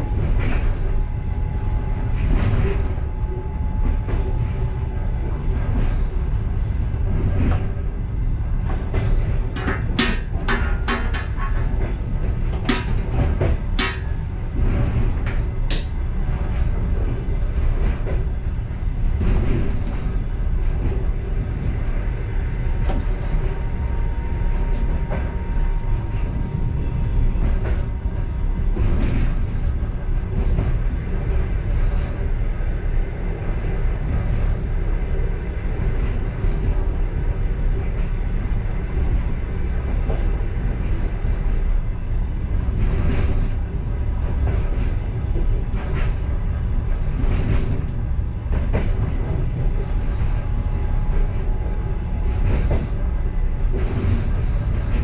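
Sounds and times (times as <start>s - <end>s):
train rumbling on rails: 0.0s - 55.0s
sharp clacks of train wheels: 8.6s - 16.0s.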